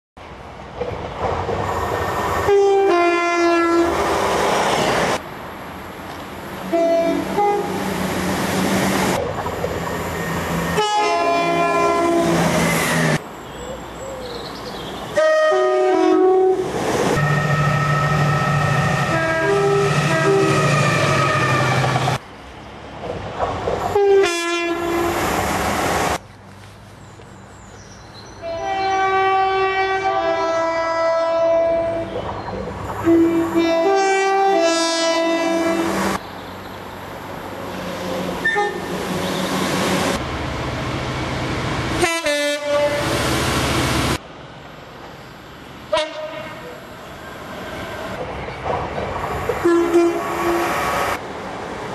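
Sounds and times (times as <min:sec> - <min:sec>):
train running noise: 0:00.3 - 0:13.4, 0:15.0 - 0:51.9
two-tone train horn blasts: 0:02.4 - 0:04.0, 0:06.7 - 0:07.8, 0:10.7 - 0:12.6, 0:15.2 - 0:21.9, 0:23.9 - 0:25.2, 0:28.4 - 0:32.1, 0:33.0 - 0:36.0, 0:38.4 - 0:39.6, 0:42.0 - 0:43.2, 0:45.9 - 0:46.8, 0:49.6 - 0:50.9.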